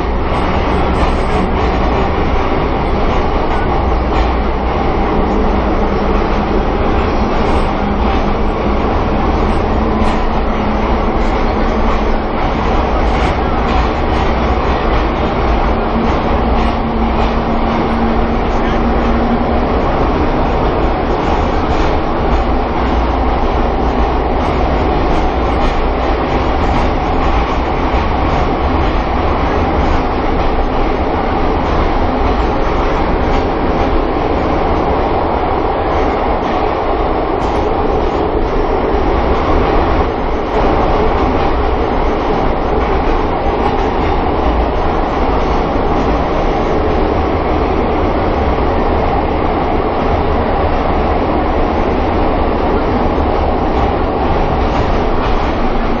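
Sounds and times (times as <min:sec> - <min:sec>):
train wheels rumbling on rails: 0:00.0 - 0:56.0.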